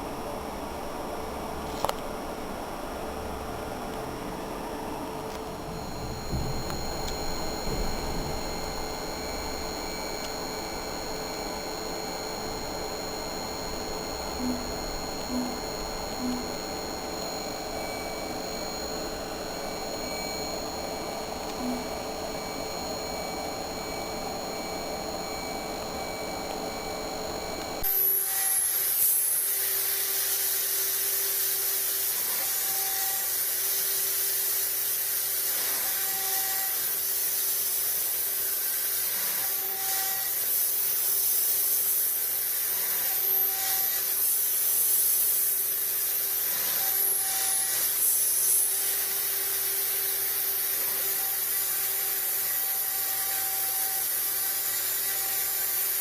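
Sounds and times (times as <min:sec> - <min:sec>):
router spindle whining hum: 0:00.0 - 0:56.0
short machine tones: 0:05.4 - 0:29.9, 0:39.1 - 0:40.4.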